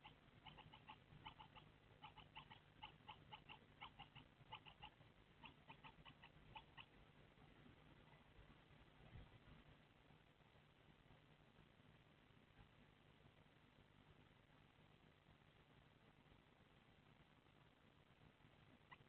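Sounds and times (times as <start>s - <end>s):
nestlings begging cheeps: 0.0s - 7.0s
steady low hum: 0.0s - 19.0s.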